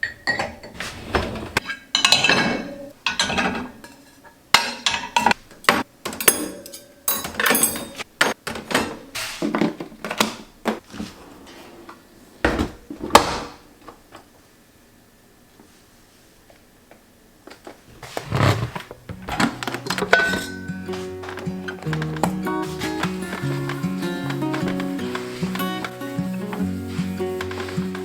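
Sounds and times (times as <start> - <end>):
dishes and cutlery clinking: 1.6 - 9.0, 19.1 - 28.0.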